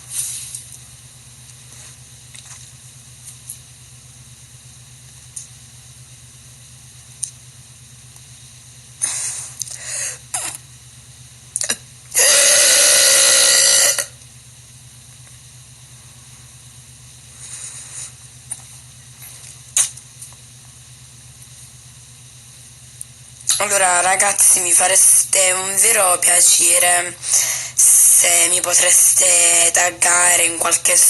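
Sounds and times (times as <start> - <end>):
woman burping: 11.6 - 14.1.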